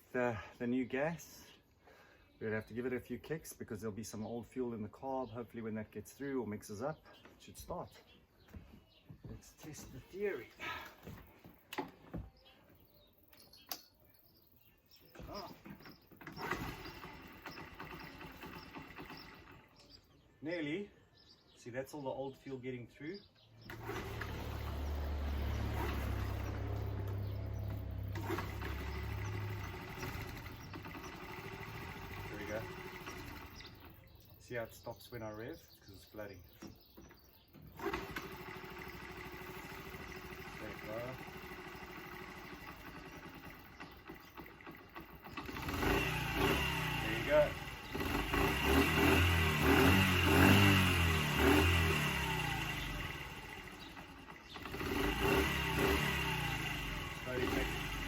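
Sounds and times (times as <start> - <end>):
small engine running: 15.3 - 20.1, 23.6 - 34.3, 37.5 - 58.0.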